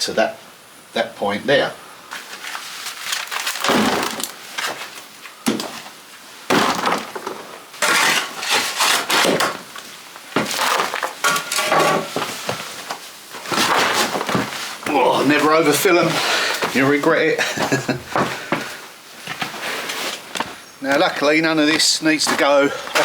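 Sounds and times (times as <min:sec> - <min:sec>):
shovel scraping stony earth: 0:07.8 - 0:09.5, 0:21.7 - 0:23.0.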